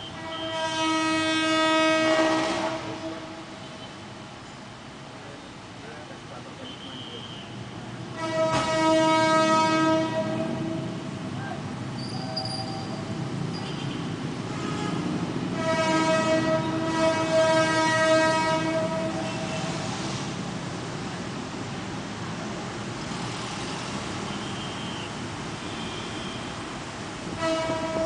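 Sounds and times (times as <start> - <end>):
train horn blasts: 0.0 - 3.9, 8.1 - 11.1, 14.5 - 19.8, 27.2 - 28.0.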